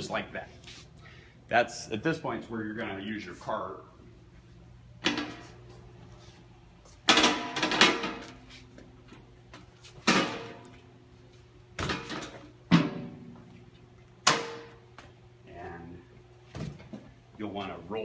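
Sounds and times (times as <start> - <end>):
low steady hum: 0.0 - 18.0
sharp metal clanks and bangs: 7.1 - 8.3, 10.0 - 10.8, 14.2 - 14.8.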